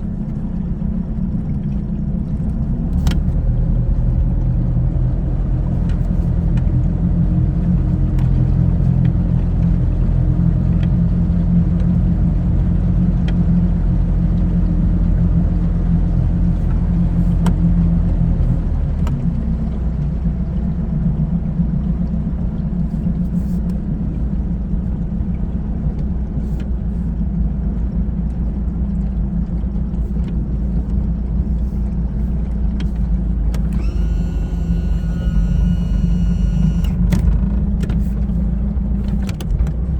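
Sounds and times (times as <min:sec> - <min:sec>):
boat engine droning: 0:28.5 - 0:39.9.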